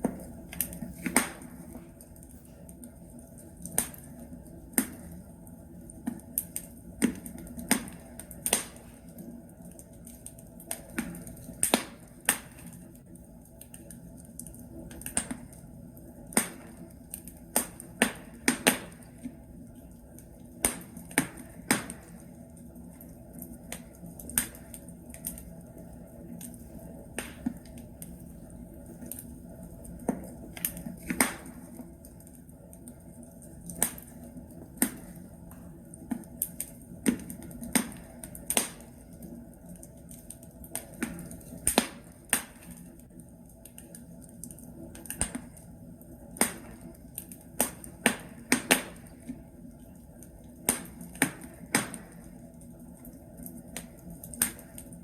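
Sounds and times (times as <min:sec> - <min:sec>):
logs crackling in a fireplace: 0:00.0 - 0:55.0.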